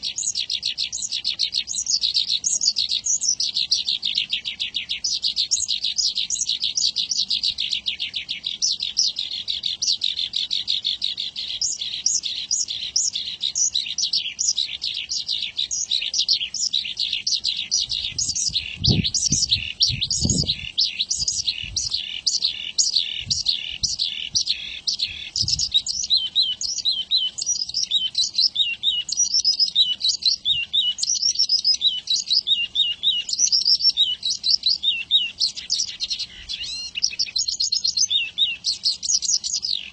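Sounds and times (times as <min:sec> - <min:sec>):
bird singing chirping trills: 0:00.0 - 0:39.9.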